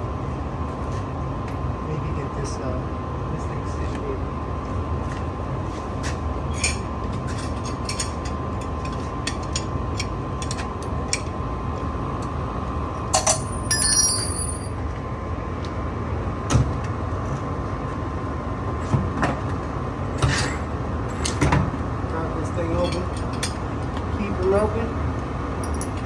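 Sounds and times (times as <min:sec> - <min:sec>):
steady background hum: 0:00.0 - 0:26.0
ringing metallic clinks: 0:13.2 - 0:14.7, 0:25.6 - 0:26.0.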